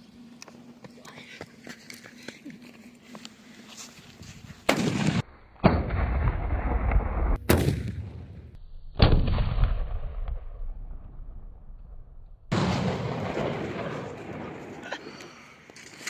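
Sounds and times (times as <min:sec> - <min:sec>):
firecracker bomb bangs: 0:09.0 - 0:11.0.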